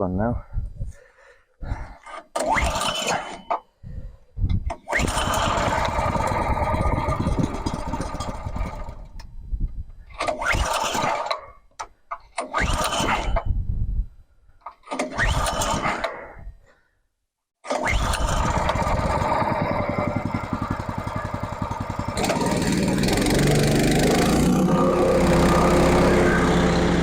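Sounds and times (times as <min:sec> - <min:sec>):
recoil starter cranking: 0:02.3 - 0:03.5, 0:04.7 - 0:09.3, 0:10.2 - 0:11.4, 0:12.4 - 0:13.4, 0:14.9 - 0:16.2, 0:17.7 - 0:27.0
petrol engine running: 0:05.1 - 0:09.0, 0:18.0 - 0:27.0.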